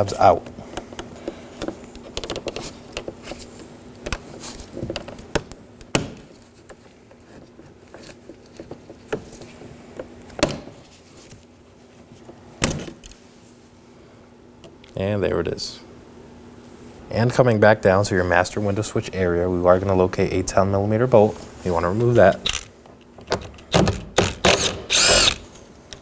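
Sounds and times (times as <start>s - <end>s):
faint steady hum: 0.0s - 26.0s
plastic tools prying trim: 23.3s - 25.4s.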